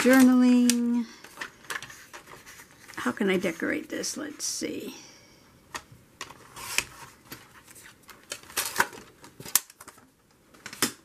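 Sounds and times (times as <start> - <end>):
paper rustling: 0.0 - 3.6, 6.2 - 10.9.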